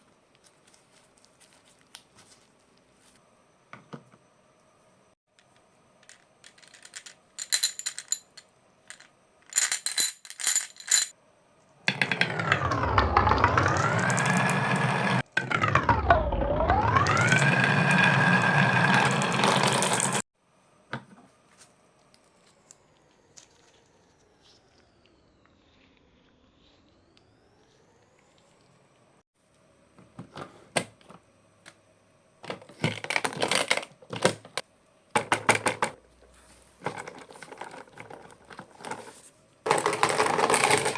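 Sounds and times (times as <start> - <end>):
marbles clicking on marble run: 11.9 - 20.2.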